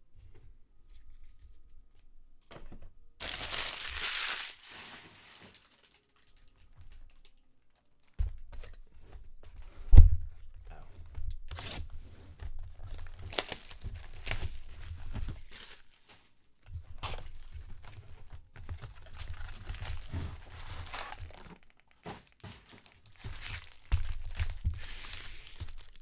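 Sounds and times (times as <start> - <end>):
plastic wrappers tearing and crinkling: 3.2 - 8.2, 12.8 - 16.3, 18.8 - 26.0.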